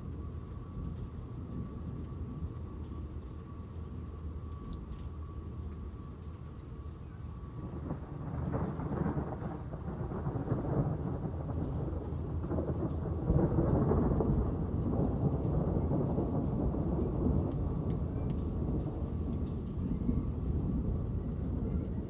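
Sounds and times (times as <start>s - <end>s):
steady rain: 0.0s - 22.0s
rolling thunder: 7.4s - 22.0s.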